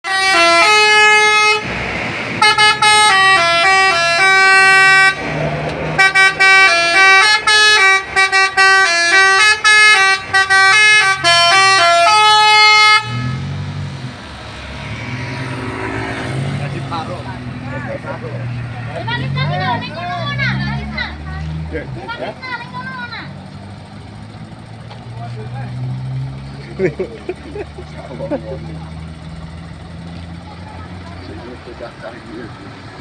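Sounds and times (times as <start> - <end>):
musical bus horn tune: 0.0 - 1.8, 2.4 - 13.8
low rumble: 13.6 - 17.7.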